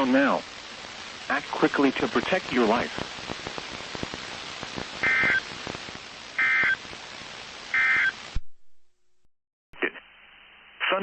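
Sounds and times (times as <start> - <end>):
radio hiss and crackle: 0.0 - 8.4, 9.8 - 11.0
digital data tone bursts: 5.0 - 5.6, 6.4 - 6.8, 7.7 - 8.2.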